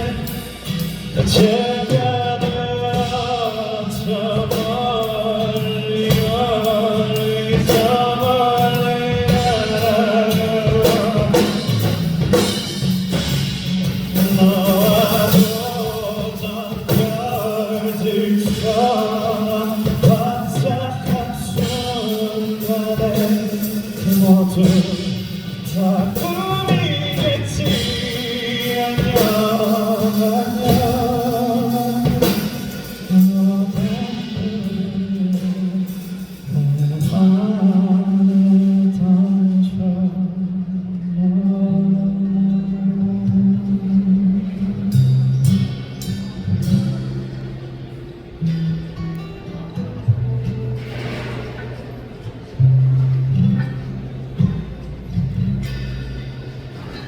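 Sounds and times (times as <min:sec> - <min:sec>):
instrumental accompaniment: 0:00.0 - 0:39.1
man singing: 0:00.0 - 0:47.3.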